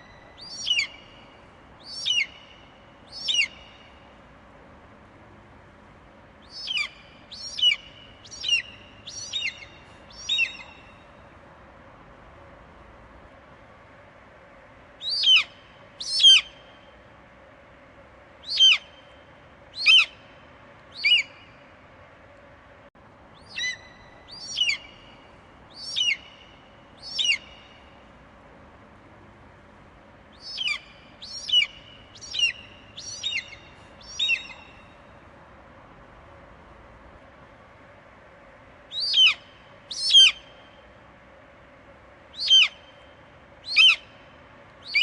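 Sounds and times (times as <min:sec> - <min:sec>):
faint background hiss: 0:00.0 - 0:45.0.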